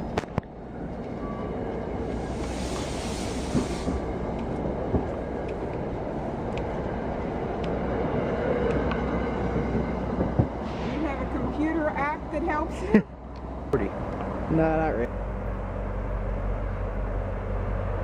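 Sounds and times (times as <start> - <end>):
train rumbling on tracks: 0.0 - 18.0
burst of hiss: 2.3 - 4.1.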